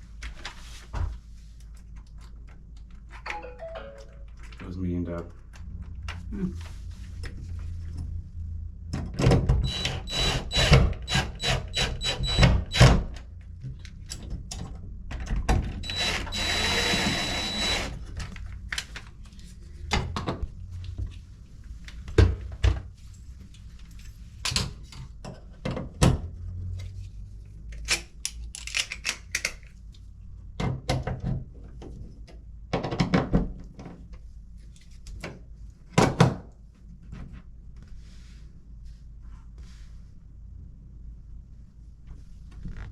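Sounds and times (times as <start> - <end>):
power drill driver running: 9.6 - 12.9, 15.8 - 18.0.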